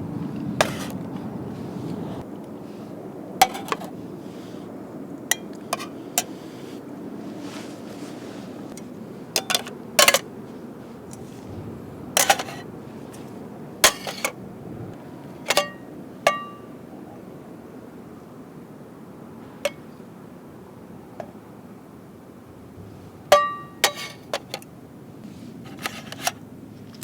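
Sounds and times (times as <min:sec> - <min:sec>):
metal cookware clinking: 0:15.5 - 0:16.7, 0:23.3 - 0:24.6.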